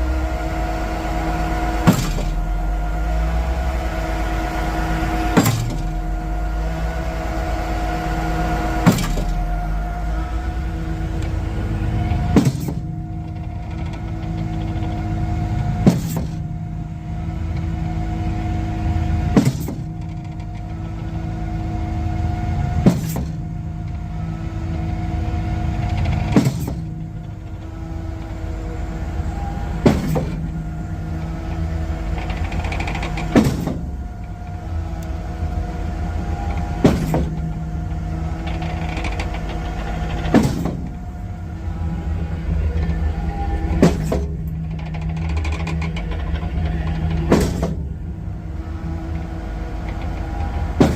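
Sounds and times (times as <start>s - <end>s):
hydraulic clunk: 0.0s - 50.9s
pump truck engine droning: 0.0s - 50.9s.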